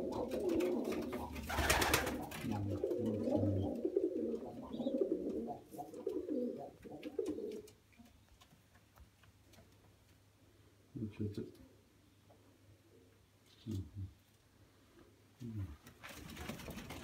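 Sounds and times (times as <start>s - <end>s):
pigeons cooing: 0.0s - 7.8s.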